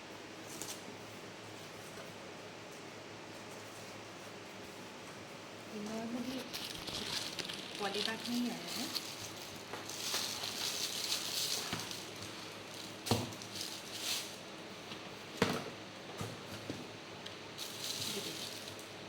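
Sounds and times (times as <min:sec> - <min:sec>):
plastic bag crinkling: 0:05.8 - 0:14.6, 0:17.5 - 0:19.0.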